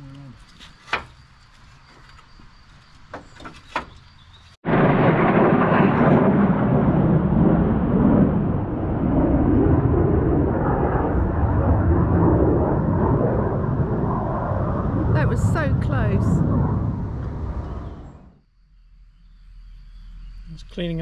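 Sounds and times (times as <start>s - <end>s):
thunder rumbling: 4.6s - 18.4s.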